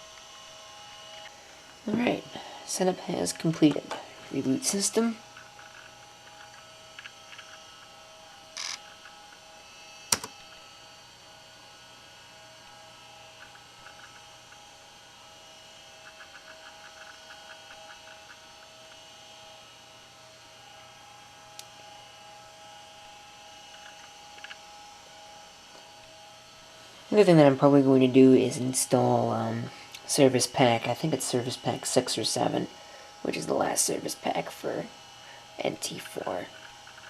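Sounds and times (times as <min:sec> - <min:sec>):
laptop electrical hum: 0:00.0 - 0:37.0
hard drive ticking: 0:05.2 - 0:07.9, 0:13.4 - 0:14.6, 0:16.0 - 0:19.0
sharp click: 0:10.1 - 0:10.4.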